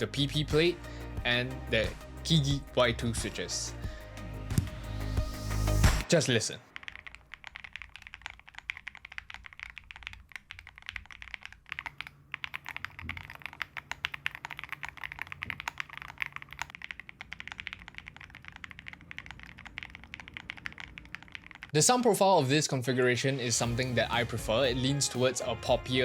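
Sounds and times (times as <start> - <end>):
mechanical keyboard typing: 6.1 - 21.7.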